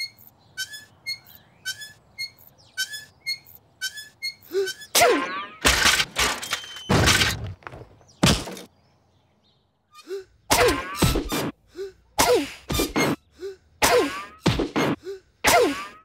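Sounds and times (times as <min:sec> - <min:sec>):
heavy thuds and crashes: 0:05.7 - 0:08.7.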